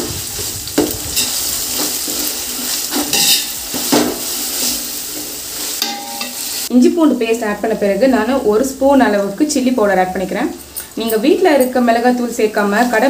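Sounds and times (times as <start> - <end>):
paste sizzling in oil: 0.0 - 6.8
spoon scraping a pot: 1.0 - 6.6.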